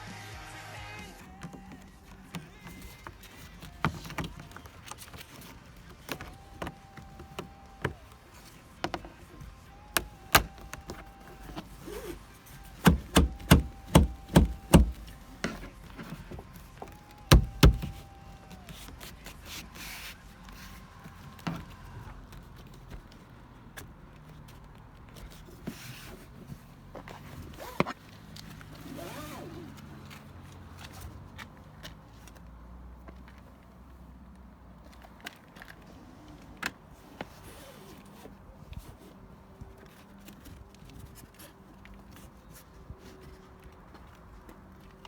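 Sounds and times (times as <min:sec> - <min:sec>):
sharp knocks and clicks: 0:12.8 - 0:15.2.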